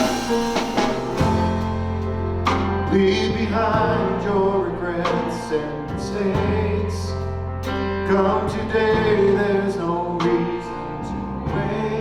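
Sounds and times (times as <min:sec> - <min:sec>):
person singing: 0:00.0 - 0:12.0
sustained bass notes: 0:00.0 - 0:12.0
worship band music: 0:00.0 - 0:12.0.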